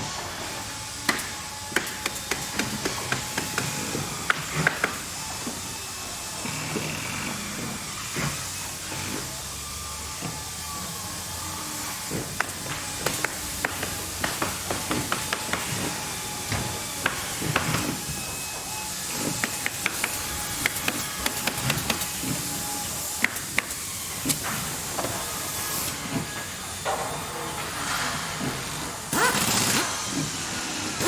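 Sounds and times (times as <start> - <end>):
machinery hiss: 9.4 - 31.0.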